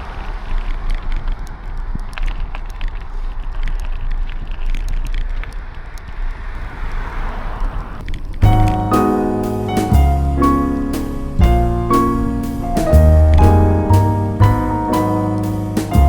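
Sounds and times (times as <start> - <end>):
bicycle tyre and road noise: 0.0 - 16.0
wind buffeting microphone: 6.6 - 15.1
piano music: 8.4 - 16.0.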